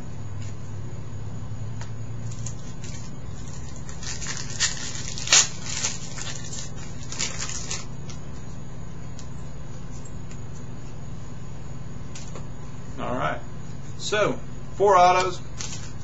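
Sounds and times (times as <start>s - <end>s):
wrapper rustling: 2.3s - 8.1s, 15.5s - 16.0s.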